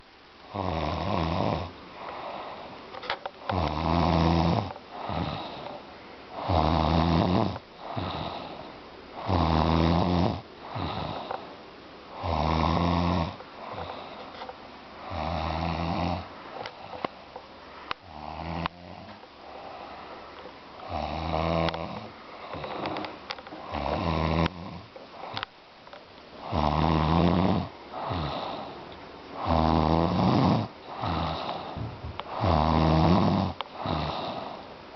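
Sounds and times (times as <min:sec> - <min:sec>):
quiet breaths: 0:00.0 - 0:34.9
woman snoring loudly: 0:00.5 - 0:02.6, 0:03.5 - 0:05.7, 0:06.4 - 0:08.6, 0:09.2 - 0:11.4, 0:12.1 - 0:14.1, 0:15.0 - 0:16.3, 0:18.0 - 0:19.9, 0:20.8 - 0:25.4, 0:26.4 - 0:28.8, 0:29.4 - 0:34.6.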